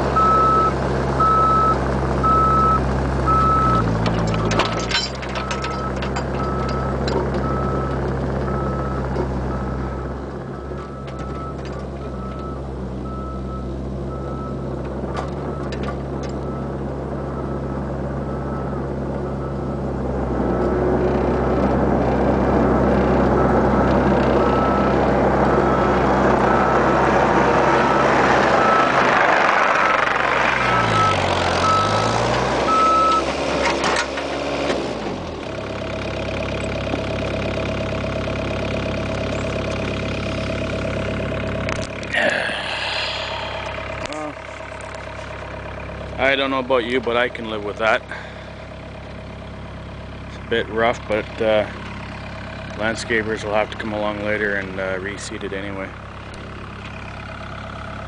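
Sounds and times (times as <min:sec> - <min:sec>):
excavator diesel engine under load: 0:00.0 - 0:58.0
travel alarm beeping: 0:00.2 - 0:04.5, 0:32.7 - 0:33.2.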